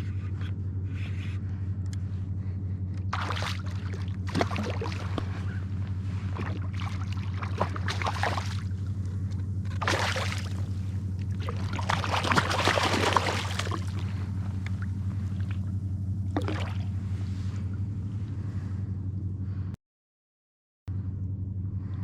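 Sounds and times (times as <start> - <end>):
steady low hum: 0.0 - 19.8, 20.9 - 22.0
shallow water sloshing and splashing: 3.1 - 17.7.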